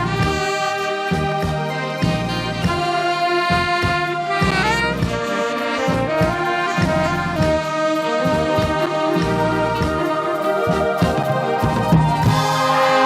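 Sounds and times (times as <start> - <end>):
horn melody: 0.0 - 13.0
live band playing dance music: 0.0 - 13.0
pulsing bass line: 8.3 - 13.0.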